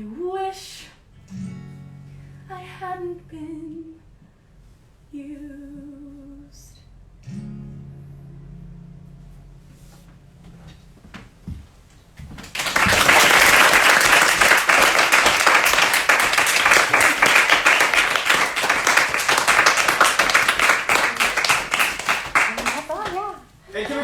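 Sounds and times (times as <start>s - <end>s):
audience applause: 12.4s - 24.0s.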